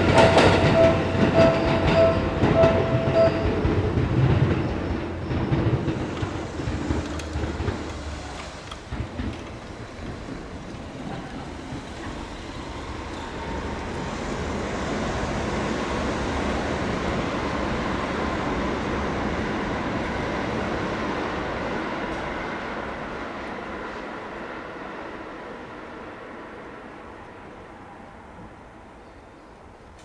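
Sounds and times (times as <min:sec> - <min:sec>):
train wheel rushing noise: 0:00.0 - 0:22.6.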